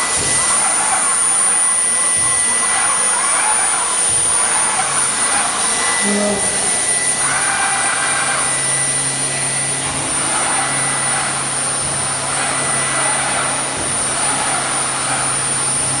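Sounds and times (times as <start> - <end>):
carving machine whine and hum: 0.0 - 16.0.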